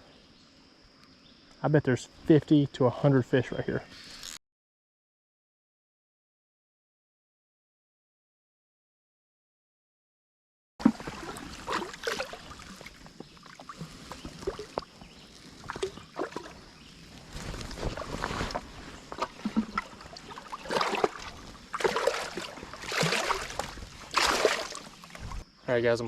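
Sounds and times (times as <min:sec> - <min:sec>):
creek water splashing: 0:10.8 - 0:25.4.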